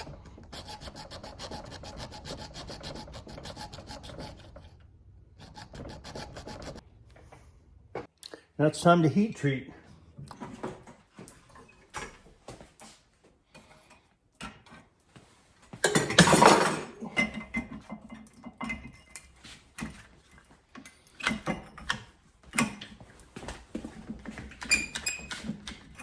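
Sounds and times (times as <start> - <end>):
metal parts and tools clinking: 15.8 - 22.0.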